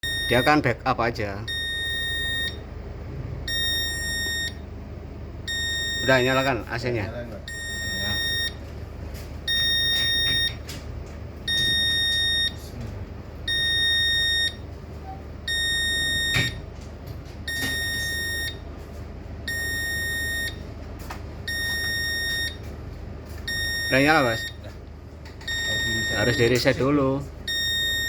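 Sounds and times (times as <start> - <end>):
fire alarm buzzer beeping: 0.0 - 0.7, 1.4 - 2.8, 3.4 - 4.8, 5.4 - 6.7, 7.4 - 8.6, 9.4 - 10.7, 11.4 - 12.6, 13.4 - 16.8, 17.4 - 18.7, 19.4 - 20.7, 21.4 - 22.7, 23.4 - 24.7, 25.4 - 26.8, 27.4 - 28.0
steady low hum: 0.0 - 28.0.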